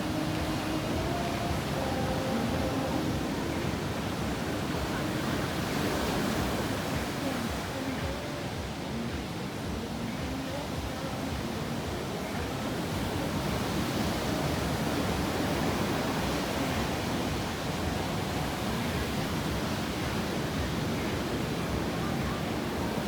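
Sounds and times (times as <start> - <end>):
ocean surf breaking: 0.0 - 23.0.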